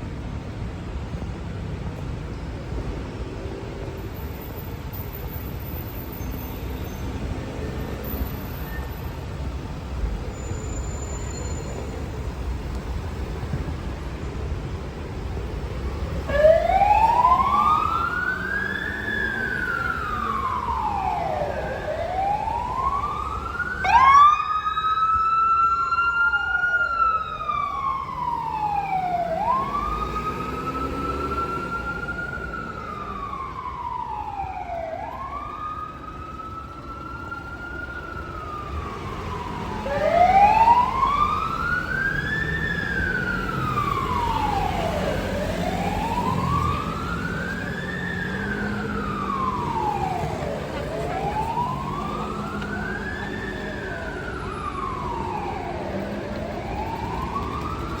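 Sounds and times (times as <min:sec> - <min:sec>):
fire engine siren wailing: 0:15.6 - 0:58.0.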